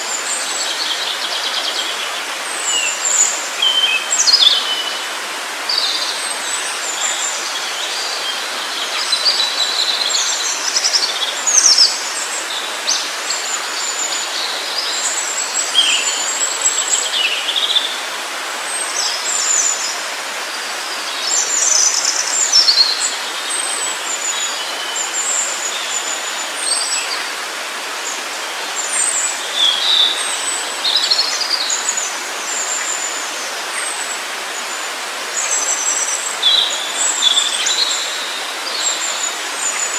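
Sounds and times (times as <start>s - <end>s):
running water: 0.0s - 39.9s.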